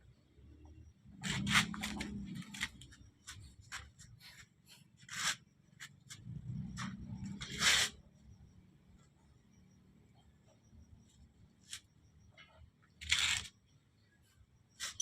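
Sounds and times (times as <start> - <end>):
metal parts clicking and scraping: 12.4 - 13.5.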